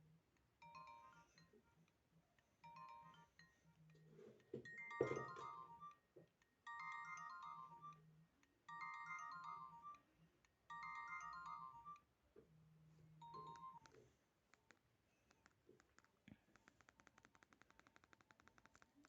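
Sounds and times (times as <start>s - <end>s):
polyphonic phone ringtone: 0.6s - 1.5s, 2.6s - 8.0s, 8.7s - 10.1s, 10.7s - 12.1s, 13.2s - 13.9s.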